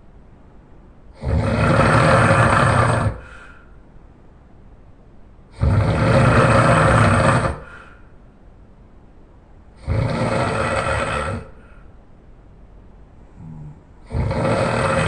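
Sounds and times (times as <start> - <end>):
person snoring loudly: 1.2 - 3.6, 5.5 - 8.0, 9.8 - 11.8, 13.4 - 15.0.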